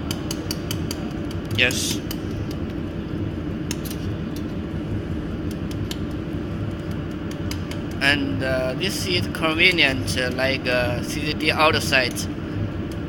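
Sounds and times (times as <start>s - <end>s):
faint irregular clicks: 0.0s - 3.0s, 3.6s - 4.6s, 5.4s - 8.1s, 12.0s - 13.0s
laser welding machine hum: 0.0s - 13.0s.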